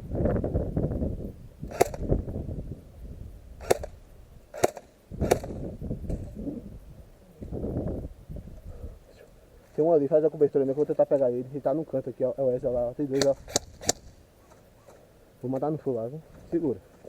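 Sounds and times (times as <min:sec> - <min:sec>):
airsoft gun shots: 0:01.7 - 0:02.1, 0:03.6 - 0:05.6, 0:13.1 - 0:14.2.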